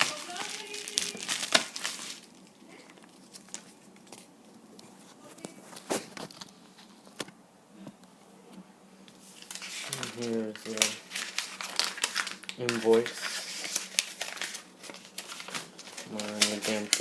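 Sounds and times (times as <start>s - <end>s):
packaging rustling and crinkling: 0.0s - 7.3s, 9.1s - 17.0s.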